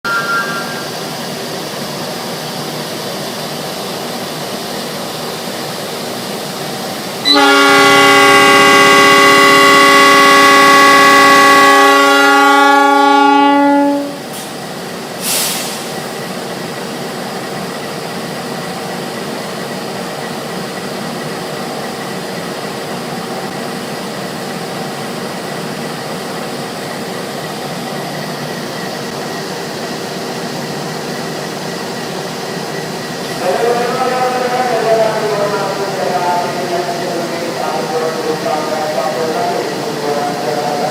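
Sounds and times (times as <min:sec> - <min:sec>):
locomotive horn blast: 0:00.0 - 0:01.0, 0:07.2 - 0:14.2
short hiss: 0:15.2 - 0:16.0.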